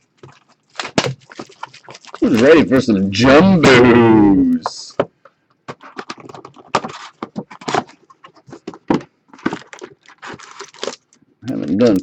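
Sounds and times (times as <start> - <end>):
plastic wrapping crinkling and tearing: 0.0 - 3.2, 5.7 - 12.0.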